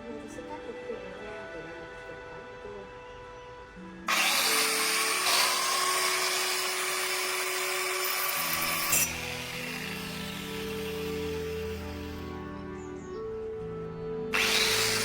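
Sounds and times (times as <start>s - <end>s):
background music: 0.0s - 15.0s
power tool grinding: 4.1s - 12.5s, 14.3s - 15.0s.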